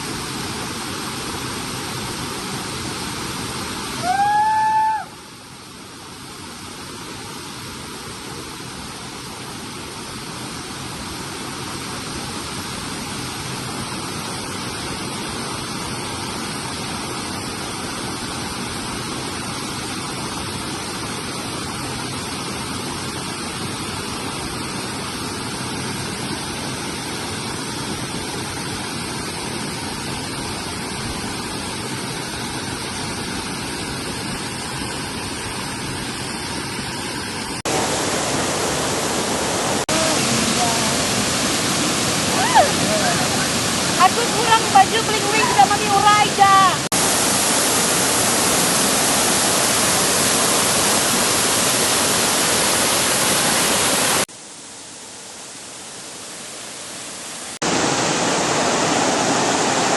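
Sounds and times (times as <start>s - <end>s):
waterfall rushing water: 0.0s - 59.9s.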